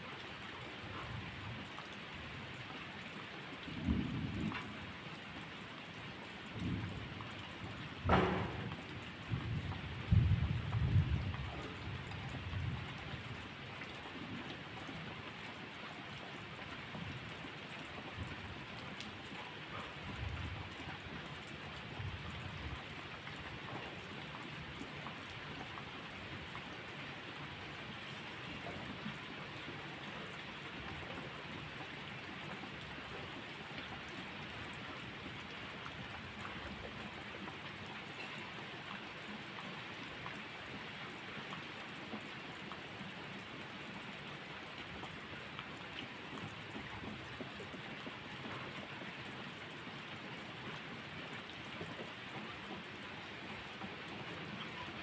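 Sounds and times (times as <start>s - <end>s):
steady rain falling: 0.0s - 55.0s
distant thunder rumbles: 7.9s - 11.2s.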